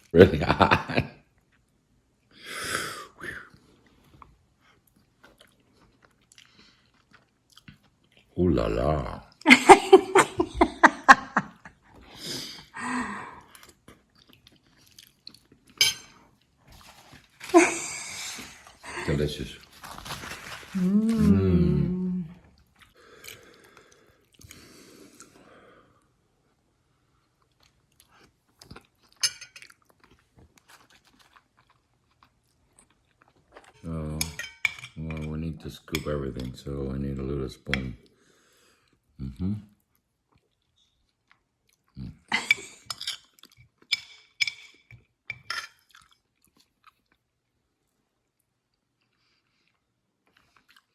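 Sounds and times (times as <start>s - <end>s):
person chewing food: 3.5s - 8.4s, 10.6s - 17.6s, 22.4s - 26.2s, 26.8s - 35.3s, 39.8s - 50.9s
spoon scraping and clinking dish: 15.8s - 16.2s, 29.2s - 29.7s, 34.2s - 35.3s, 42.4s - 43.3s, 43.9s - 45.9s.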